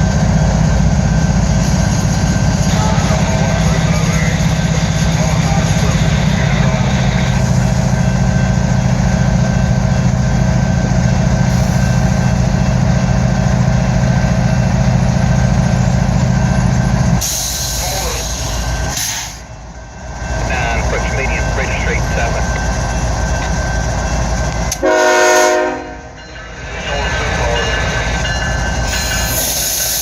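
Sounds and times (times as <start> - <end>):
train running noise: 0.0 - 30.0
locomotive air horn: 24.7 - 26.2.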